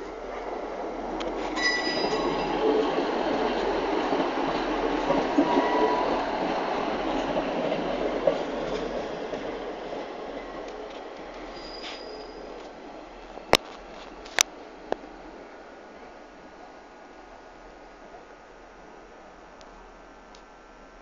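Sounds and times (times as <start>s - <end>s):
train wheel and rail noise: 0.0s - 20.9s
high wheel squeal: 1.6s - 2.7s, 11.5s - 12.6s.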